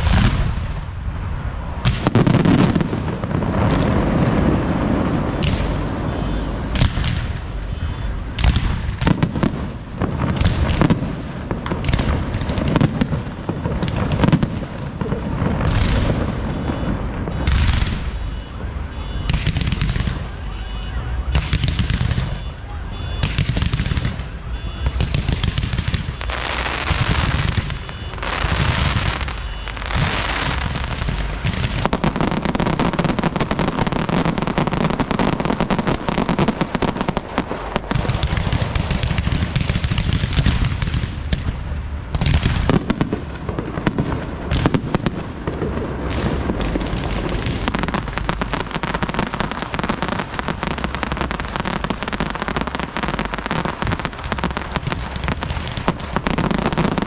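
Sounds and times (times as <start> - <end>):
fireworks booming: 0.0 - 57.0
fireworks crackling: 0.0 - 57.0.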